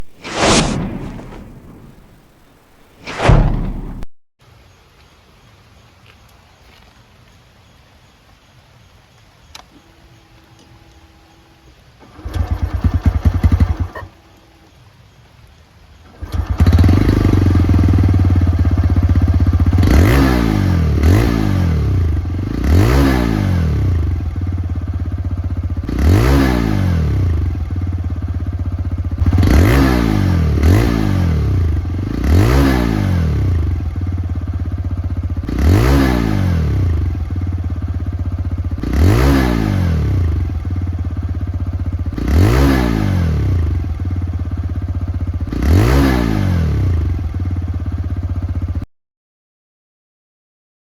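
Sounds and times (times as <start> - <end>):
motorcycle engine revving: 12.0 - 14.0, 16.2 - 48.8.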